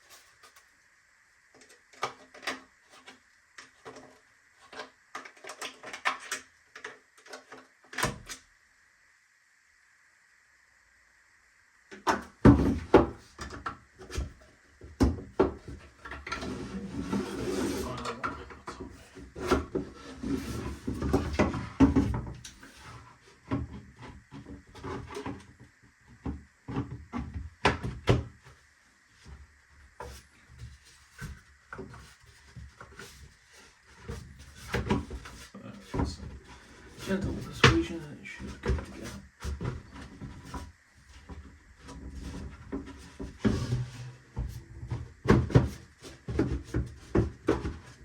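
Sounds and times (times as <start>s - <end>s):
plastic parts clicking and knocking: 1.6s - 8.3s.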